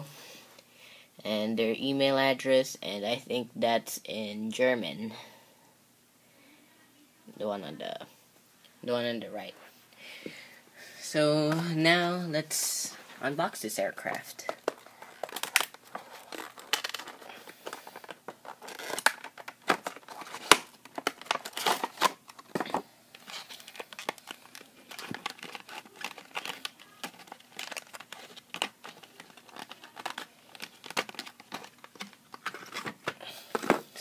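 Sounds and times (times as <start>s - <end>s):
plastic packaging crackling: 14.0s - 34.0s.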